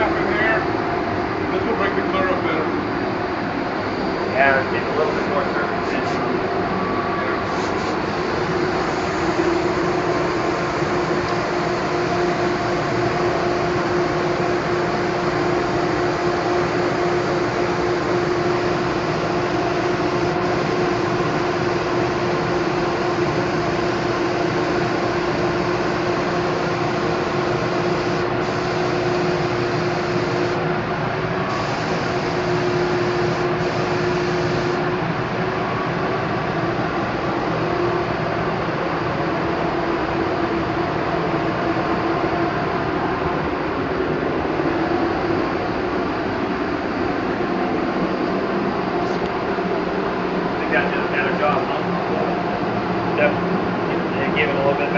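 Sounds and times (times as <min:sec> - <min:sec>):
air compressor running: 0:00.0 - 0:54.9
spray gun air hiss: 0:07.4 - 0:30.7, 0:31.5 - 0:34.9.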